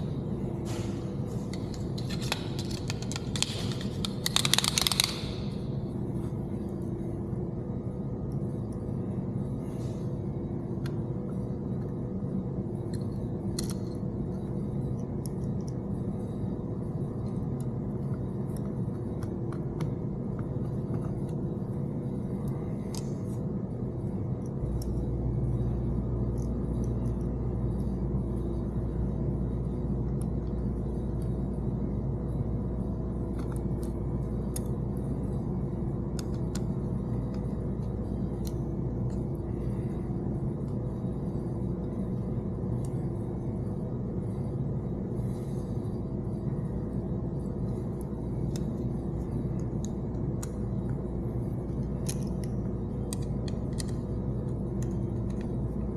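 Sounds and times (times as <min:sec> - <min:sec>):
workshop hum: 0:00.0 - 0:55.9
small parts clicking and tapping: 0:01.5 - 0:05.6, 0:12.8 - 0:15.9, 0:36.1 - 0:39.4, 0:47.8 - 0:55.9.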